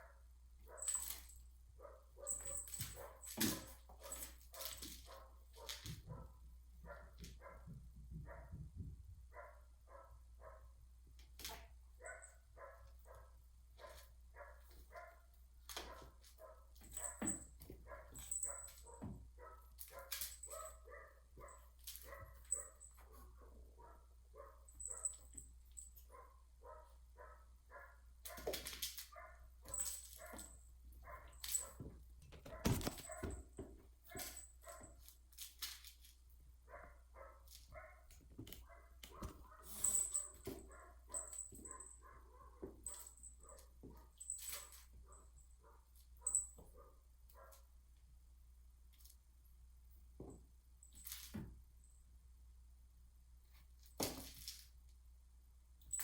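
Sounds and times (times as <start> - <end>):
knocks and scuffles: 2.2 - 9.4, 13.8 - 20.7, 29.6 - 36.3, 37.4 - 45.1, 50.1 - 51.7.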